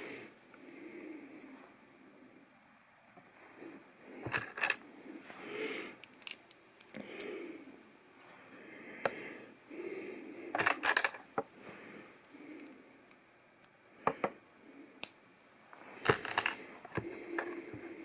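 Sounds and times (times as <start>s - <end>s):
plastic bricks clicking: 4.3s - 4.8s, 6.0s - 7.0s, 10.6s - 11.3s, 16.0s - 17.6s.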